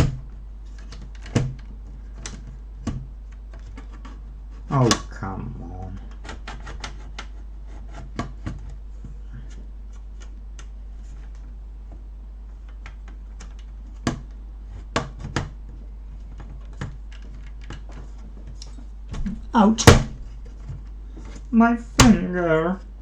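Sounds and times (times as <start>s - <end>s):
sharp knocks: 19.1s - 20.6s, 22.0s - 22.4s.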